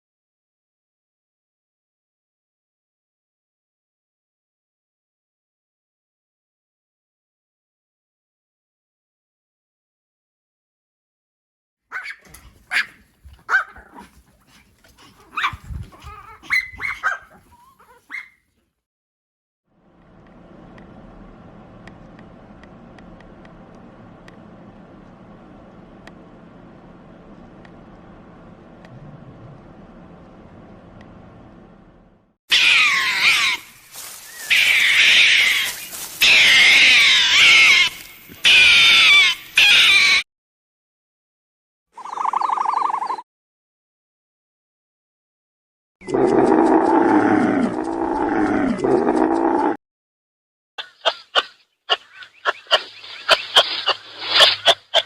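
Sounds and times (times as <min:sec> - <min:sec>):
animal making sharp calls: 0:11.9 - 0:14.1, 0:32.5 - 0:40.2, 0:50.8 - 0:55.0
low steady hum: 0:19.8 - 0:32.3.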